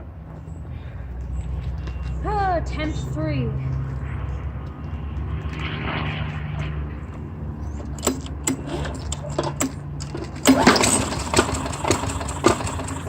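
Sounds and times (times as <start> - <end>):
steady low hum: 0.0 - 13.0
recoil starter clicks and rattles: 7.8 - 13.0.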